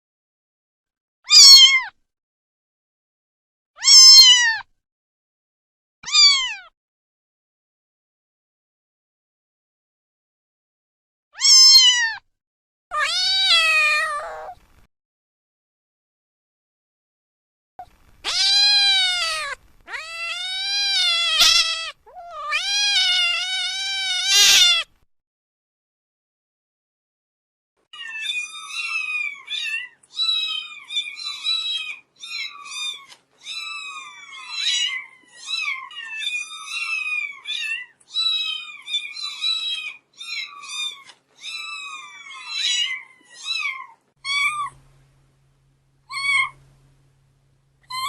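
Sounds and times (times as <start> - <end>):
cat meowing: 1.3 - 1.9, 3.8 - 4.7, 6.0 - 6.7, 11.4 - 12.2, 12.9 - 14.6, 18.2 - 24.9, 28.0 - 44.8, 46.1 - 46.6.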